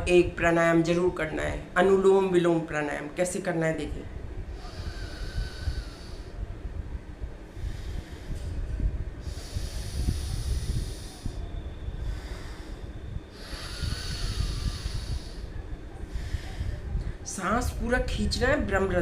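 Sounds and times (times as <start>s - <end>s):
steady low rumble: 0.0s - 19.0s
forceful nasal breathing: 4.5s - 6.7s, 7.5s - 17.3s.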